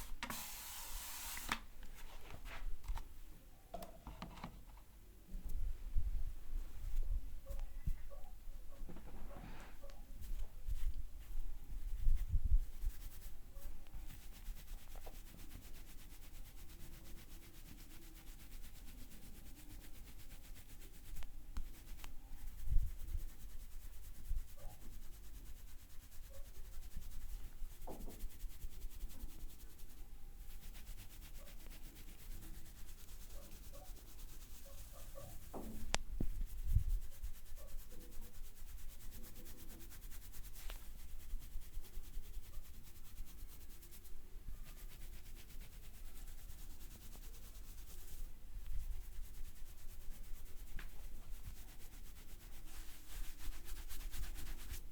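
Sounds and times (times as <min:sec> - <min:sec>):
hands rubbing hair and scalp: 0:00.0 - 0:03.0, 0:08.9 - 0:54.9.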